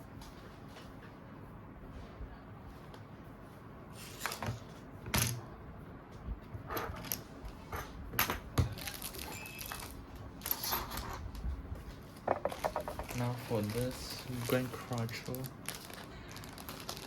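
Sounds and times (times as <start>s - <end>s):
phones set down on table: 12.3s - 13.1s.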